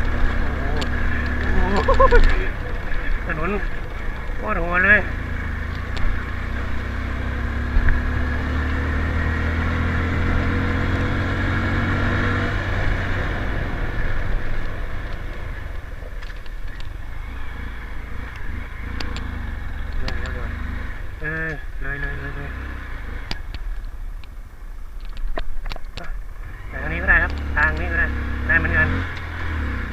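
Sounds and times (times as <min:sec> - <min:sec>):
steady low rumble: 0:00.0 - 0:08.8
motorcycle engine running: 0:00.0 - 0:29.9
sharp clicks: 0:05.6 - 0:06.1, 0:18.2 - 0:20.4.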